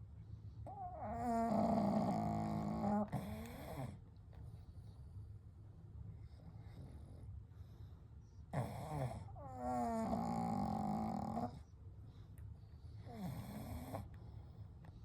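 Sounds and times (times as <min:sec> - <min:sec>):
dog snoring: 0:00.6 - 0:04.0, 0:08.5 - 0:11.7, 0:12.8 - 0:14.4.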